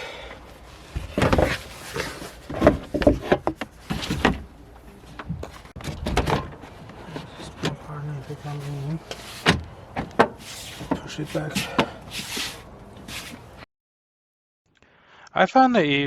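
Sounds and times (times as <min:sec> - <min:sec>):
rustling: 0:00.5 - 0:09.6, 0:10.3 - 0:13.6
plastic panels knocking and clicking: 0:02.5 - 0:04.5.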